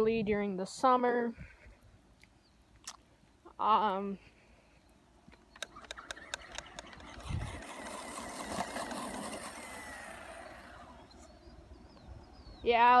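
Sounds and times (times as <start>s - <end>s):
sharp clicks and rattles: 5.3s - 11.2s
rc car electric motor whine: 5.6s - 11.9s.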